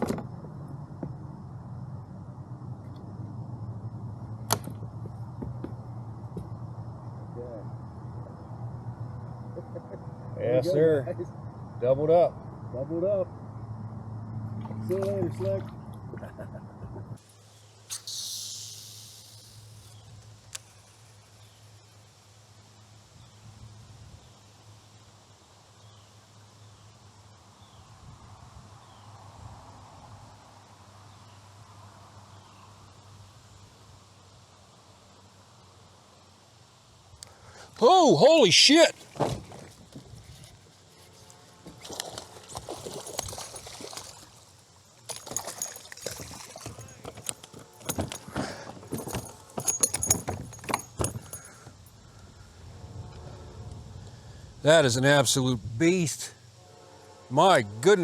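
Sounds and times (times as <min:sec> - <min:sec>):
high falling chirps: 0:17.6 - 0:20.2
metallic rattling and knocking: 0:45.1 - 0:51.8.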